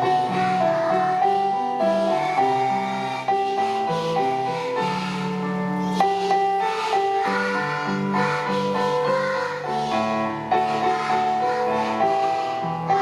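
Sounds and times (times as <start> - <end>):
children singing: 0.0 - 13.0
keyboard accompaniment: 0.0 - 13.0.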